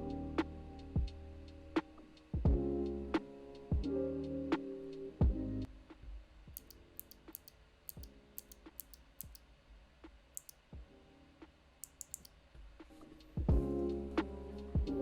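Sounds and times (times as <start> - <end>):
faint background music: 0.0 - 15.0
clicky keyboard switch clicks: 6.6 - 9.4, 10.4 - 10.6, 11.8 - 12.3.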